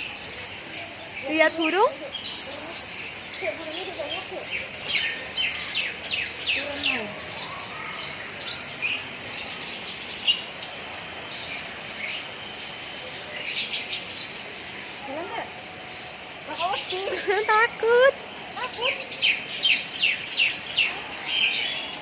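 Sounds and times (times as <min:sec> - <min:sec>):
small birds chirping: 0:00.0 - 0:22.0
steady background hiss: 0:00.0 - 0:22.0.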